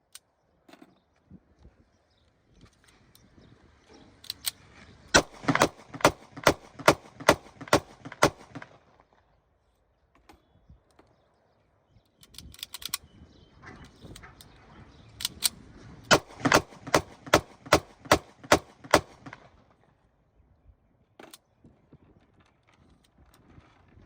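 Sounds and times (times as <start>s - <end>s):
pistol shots: 5.2s - 8.8s, 16.1s - 19.6s
quiet pistol clicks: 12.1s - 13.0s, 15.2s - 19.5s.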